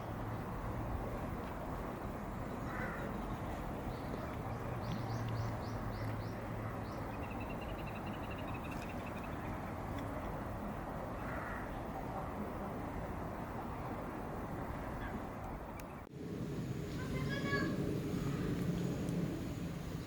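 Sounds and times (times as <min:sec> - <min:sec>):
low outdoor hum: 0:00.0 - 0:20.0
small bird calling: 0:02.5 - 0:09.6
bird trill: 0:04.8 - 0:09.4.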